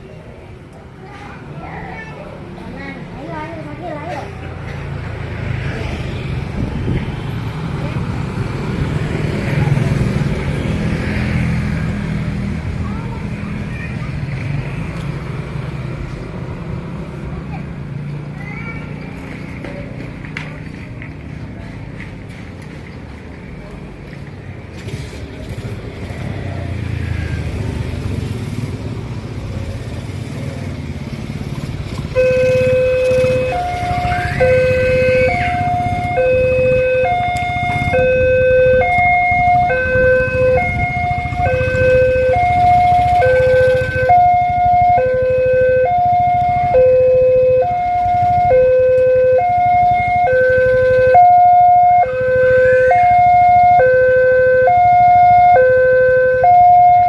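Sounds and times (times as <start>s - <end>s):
road traffic rumble: 0.0s - 57.0s
two-tone warning siren: 32.1s - 57.0s.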